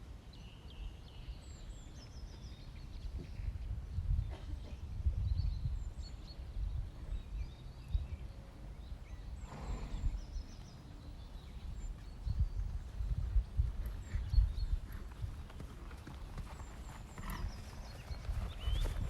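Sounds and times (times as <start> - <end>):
wind rumble on microphone: 0.5 - 19.0.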